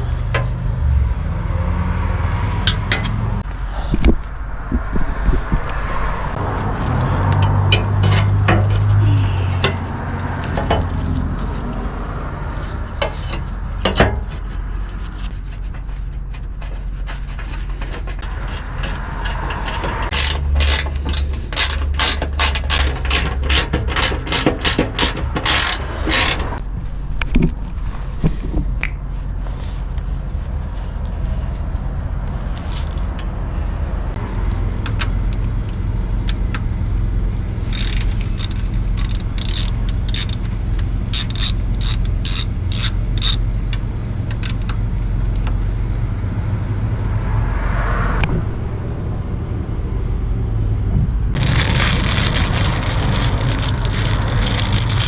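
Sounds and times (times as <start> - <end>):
ratchet wrench clicking: 37.7 - 40.5, 41.1 - 43.4.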